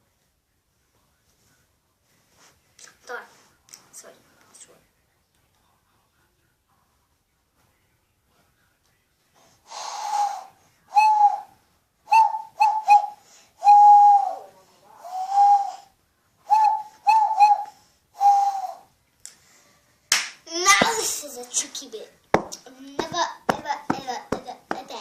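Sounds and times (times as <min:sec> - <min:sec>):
breathy hand owl hoots: 0:16.5 - 0:18.9.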